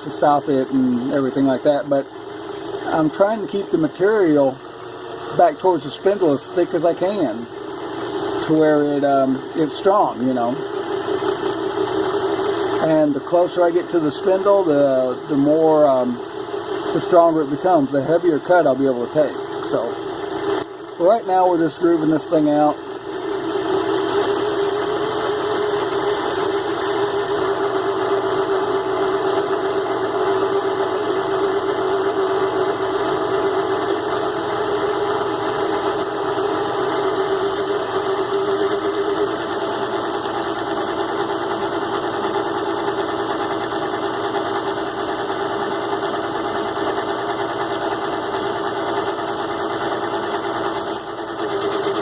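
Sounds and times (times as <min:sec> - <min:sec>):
lathe motor humming: 0:00.0 - 0:52.0
tool cutting metal: 0:33.2 - 0:52.0.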